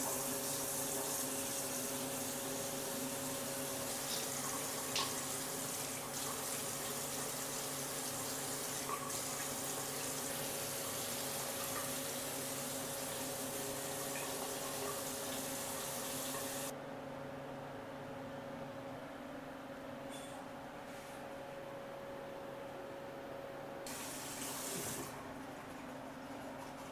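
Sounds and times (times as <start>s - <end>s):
tap water running into sink: 0.0s - 16.7s, 23.9s - 25.2s.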